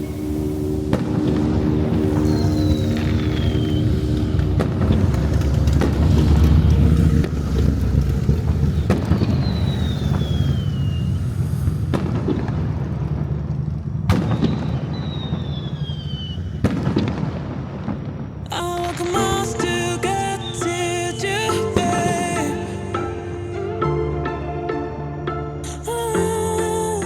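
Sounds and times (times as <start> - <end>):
high descending whistle: 0.0 - 4.5, 9.0 - 11.8, 14.2 - 16.6
continuous low rumble: 0.0 - 14.7
fireworks booming and crackling: 0.0 - 22.5.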